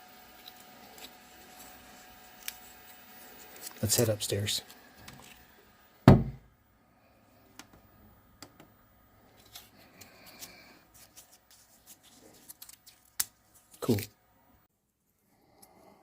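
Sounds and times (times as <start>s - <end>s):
loud thump: 6.0s - 6.5s.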